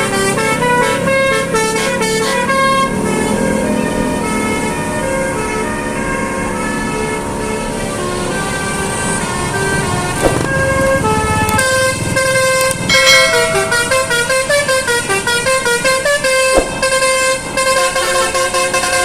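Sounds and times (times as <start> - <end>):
musical car horn: 0.0 - 19.0
traffic noise: 0.0 - 19.0.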